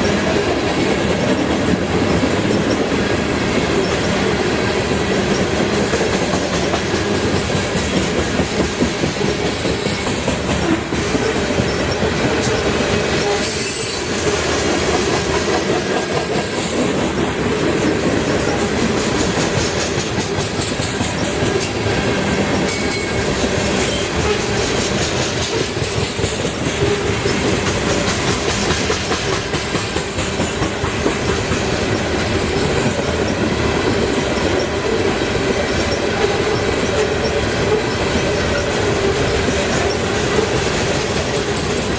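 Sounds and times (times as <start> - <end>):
train wheels clattering on rails: 0.0 - 41.9
high-pitched wheel squeals: 11.1 - 14.2.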